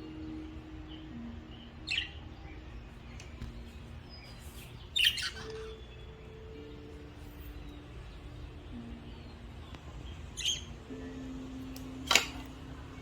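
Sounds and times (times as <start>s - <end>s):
budgerigar chirping: 4.1s - 6.5s, 10.3s - 10.9s.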